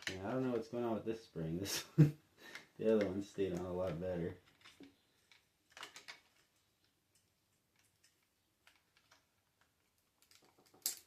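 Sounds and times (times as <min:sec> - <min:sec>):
small plastic parts clicking: 0:02.5 - 0:11.0.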